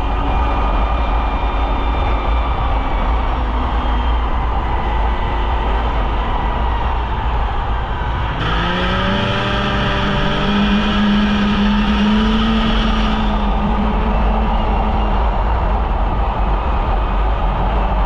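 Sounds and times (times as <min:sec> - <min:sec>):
snowmobile engine running: 0:08.2 - 0:15.0.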